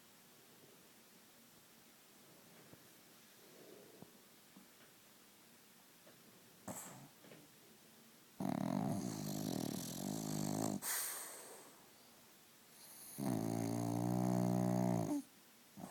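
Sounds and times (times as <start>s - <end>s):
person snoring: 8.4s - 10.9s, 12.8s - 15.2s
hissing breath: 10.8s - 11.9s.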